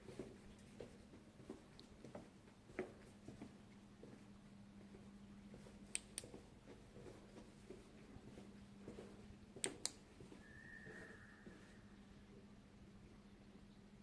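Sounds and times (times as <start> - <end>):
faint steady hum: 0.0 - 14.0
faint whistle-like tone: 10.4 - 12.0.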